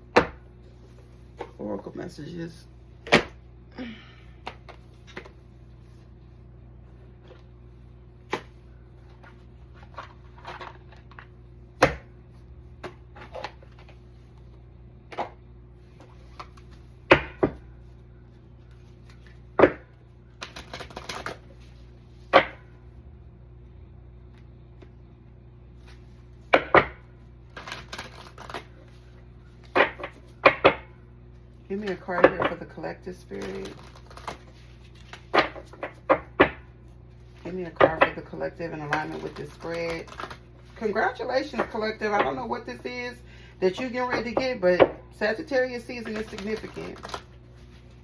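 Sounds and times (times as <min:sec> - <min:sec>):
low steady hum: 0:00.0 - 0:48.0
card rustling: 0:33.1 - 0:36.1, 0:38.4 - 0:44.3, 0:45.7 - 0:48.0.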